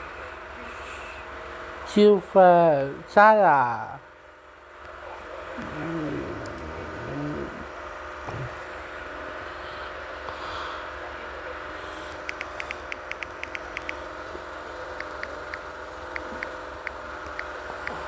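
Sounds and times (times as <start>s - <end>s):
machine hum: 4.4s - 10.2s.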